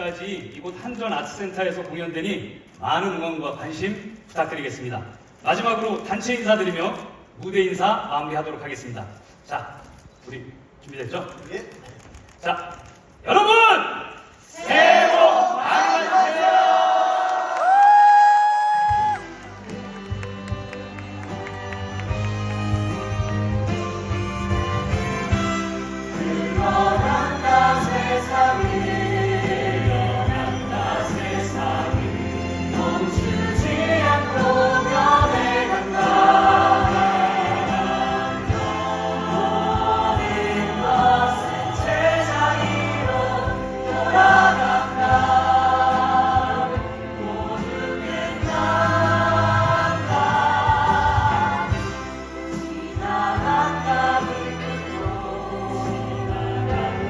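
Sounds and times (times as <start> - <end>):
choir singing: 14.5 - 17.6, 25.3 - 57.0
instrumental accompaniment: 19.2 - 57.0.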